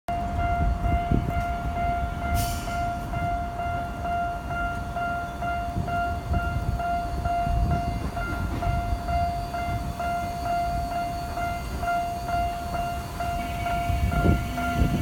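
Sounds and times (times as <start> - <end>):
train rumble: 0.1 - 15.0
level crossing bell ringing: 10.1 - 15.0.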